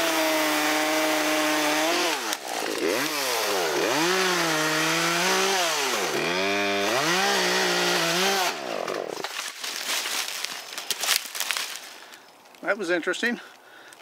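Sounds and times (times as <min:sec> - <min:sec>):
chainsaw running at high speed: 0:00.0 - 0:09.2
rustling: 0:09.2 - 0:12.7.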